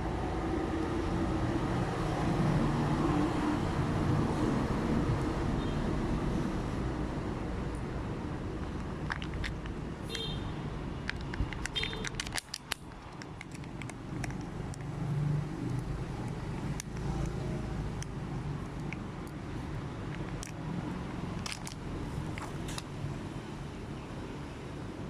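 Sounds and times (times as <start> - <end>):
packaging clicking and crinkling: 8.6 - 9.8, 11.0 - 15.0, 15.7 - 19.4, 20.1 - 22.9.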